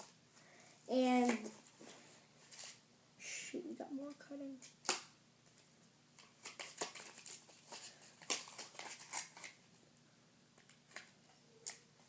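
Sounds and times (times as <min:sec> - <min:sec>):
plastic packaging crinkling: 0:06.2 - 0:09.6.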